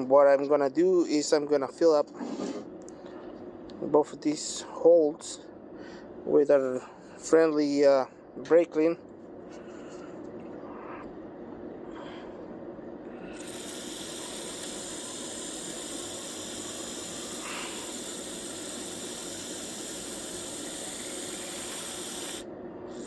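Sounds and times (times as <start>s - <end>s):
aerosol spraying: 13.4s - 22.4s.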